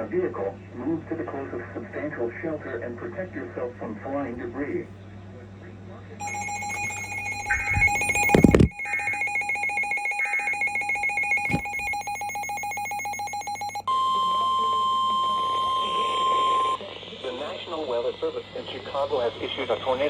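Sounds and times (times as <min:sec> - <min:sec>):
steady single tone: 0:06.2 - 0:12.0
pulsing two-pitch electronic alarm: 0:06.2 - 0:16.8.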